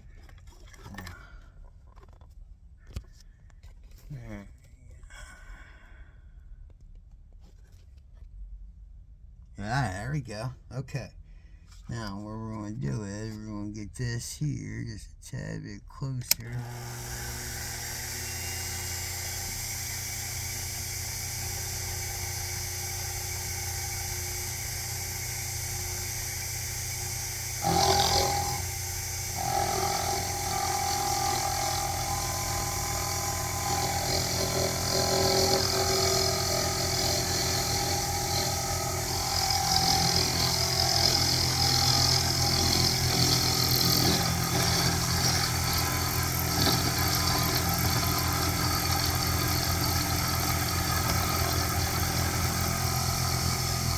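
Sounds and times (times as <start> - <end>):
end mill cutting metal: 16.3 - 53.9
milling machine motor hum: 16.3 - 53.9.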